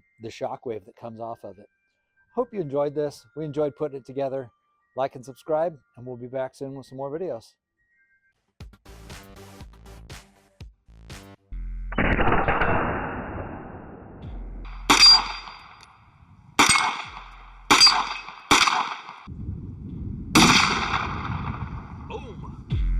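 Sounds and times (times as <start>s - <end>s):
sudden blast: 11.9s - 15.8s, 20.3s - 22.1s
sharp metallic clangs: 14.7s - 15.9s, 16.6s - 19.3s.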